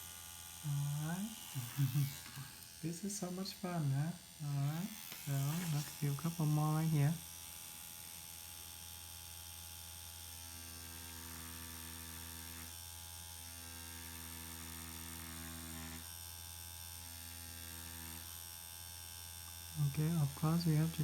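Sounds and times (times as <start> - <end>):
makeup machine pen humming: 0.0 - 7.3.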